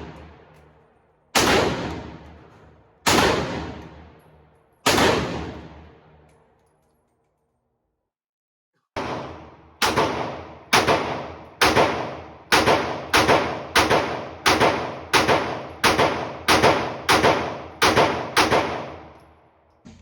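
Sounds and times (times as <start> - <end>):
pistol shots ringing: 1.3 - 4.2, 4.8 - 6.5, 9.0 - 19.2.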